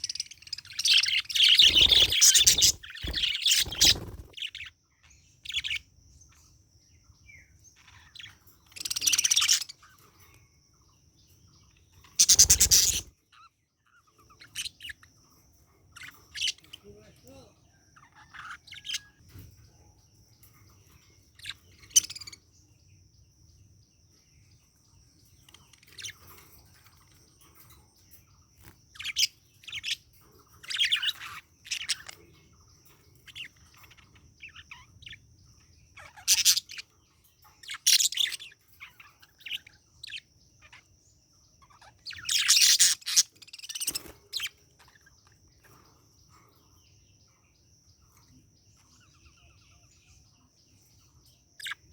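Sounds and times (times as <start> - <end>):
budgerigar chirping and chattering: 0.0 - 4.8, 7.8 - 10.1, 11.7 - 15.2, 16.0 - 19.2, 21.4 - 22.4, 30.6 - 32.4, 33.2 - 41.0, 41.6 - 45.8.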